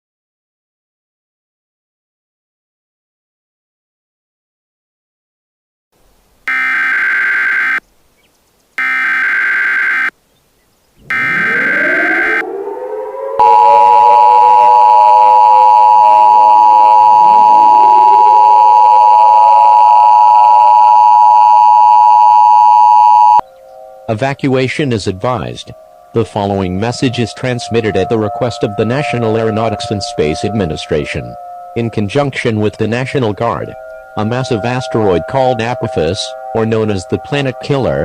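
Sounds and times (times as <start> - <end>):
sirens winding up: 6.5 - 7.8, 8.8 - 10.1, 11.0 - 38.0
two-tone attention signal: 11.1 - 12.5, 13.4 - 23.4, 26.1 - 38.0.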